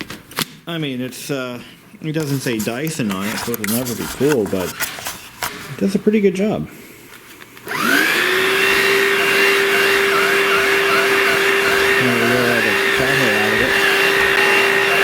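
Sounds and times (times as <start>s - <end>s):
handheld vacuum whining: 7.6s - 15.0s.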